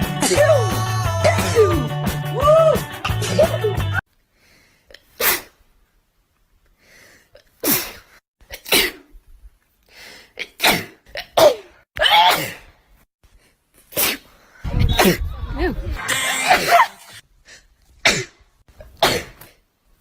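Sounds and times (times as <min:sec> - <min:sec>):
rock music: 0:00.0 - 0:04.0, 0:15.9 - 0:17.2
quick breaths: 0:04.2 - 0:04.9, 0:06.7 - 0:08.2, 0:09.8 - 0:10.4
woman sneezing: 0:05.2 - 0:05.6, 0:10.6 - 0:12.7.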